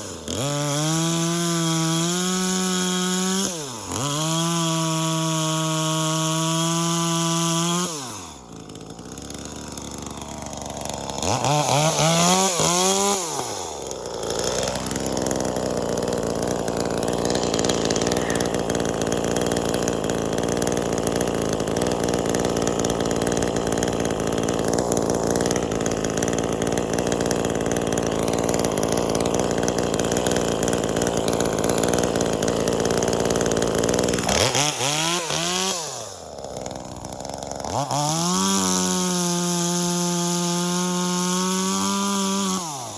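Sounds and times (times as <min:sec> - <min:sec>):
chainsaw revving and cutting: 0:00.0 - 0:42.9.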